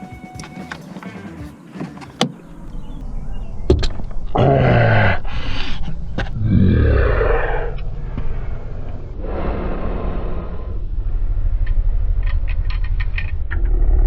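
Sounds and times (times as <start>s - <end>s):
man groaning with strain: 4.3s - 5.5s, 6.3s - 7.7s.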